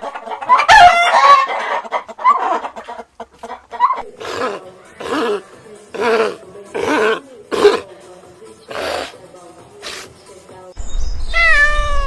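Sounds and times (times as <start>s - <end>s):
chickens clucking and squawking: 0.0s - 7.2s.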